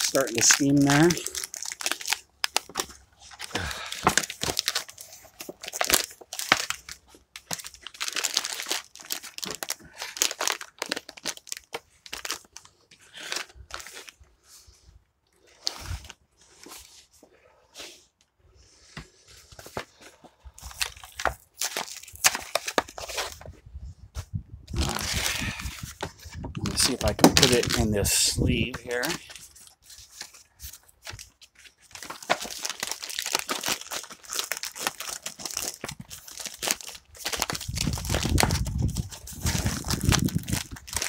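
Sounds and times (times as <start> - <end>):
plastic packaging crinkling: 0.0 - 14.2, 19.5 - 23.5, 24.7 - 41.0.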